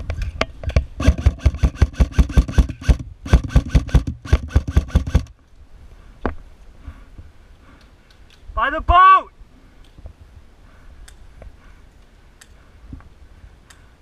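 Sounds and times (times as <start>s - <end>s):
airsoft rifle firing rapidly: 1.0s - 5.3s.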